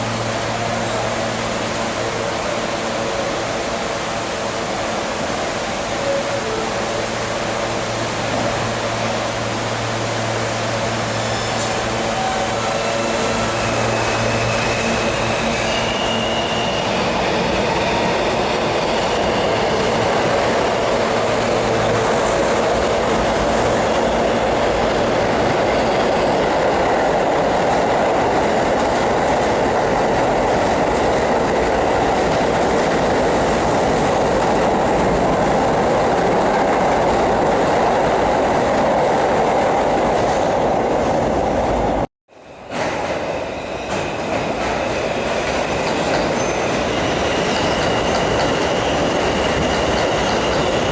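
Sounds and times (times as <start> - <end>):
subway train rumble: 0.0 - 50.9
train wheel clatter: 42.7 - 50.9.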